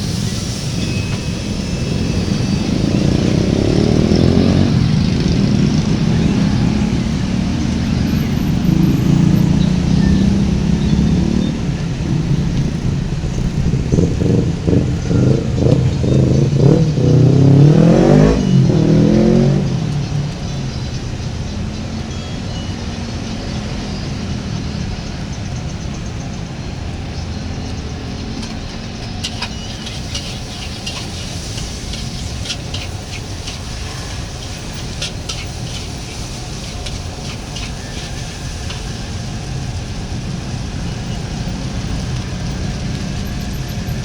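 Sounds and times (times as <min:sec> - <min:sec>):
vehicle engines passing: 0:00.0 - 0:44.0
engine revving past: 0:01.3 - 0:21.0, 0:29.2 - 0:44.0.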